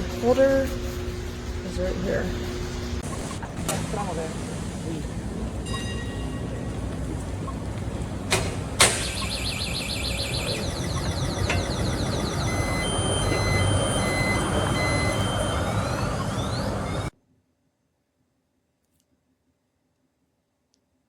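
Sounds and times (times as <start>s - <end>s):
vehicle traffic rumble: 0.0s - 17.1s
short high beeps: 8.9s - 17.1s.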